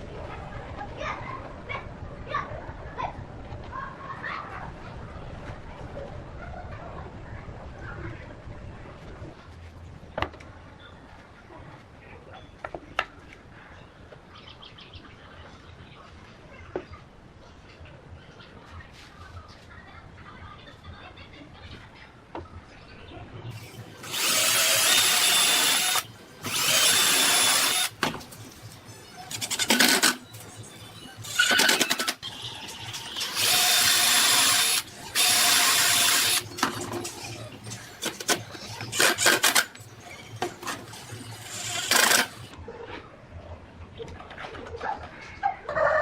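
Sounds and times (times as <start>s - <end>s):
angle grinder whining: 23.6s - 28.0s, 31.2s - 36.7s, 40.4s - 42.6s.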